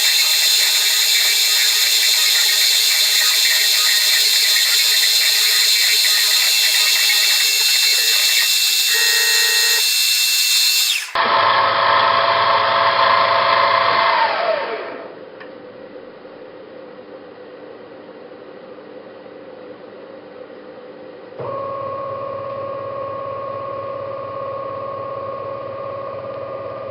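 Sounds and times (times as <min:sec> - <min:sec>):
steady hum: 0:00.0 - 0:11.2
milling machine spindle whine: 0:00.0 - 0:11.5.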